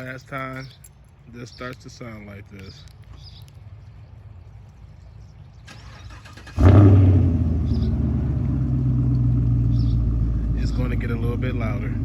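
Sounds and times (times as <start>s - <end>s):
car engine starting and idling: 5.6s - 12.0s.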